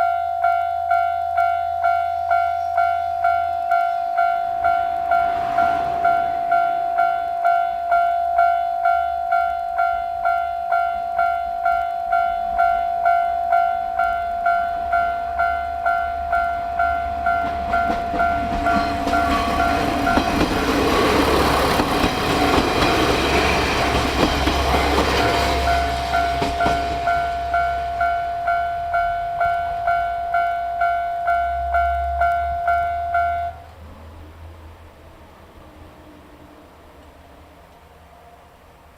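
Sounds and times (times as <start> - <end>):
train rumble and wheel clatter: 0.8 - 38.9.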